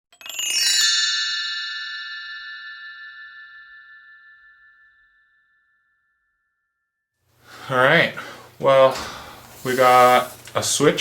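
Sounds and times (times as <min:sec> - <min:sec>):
bell-like chime ringing: 0:00.1 - 0:06.8.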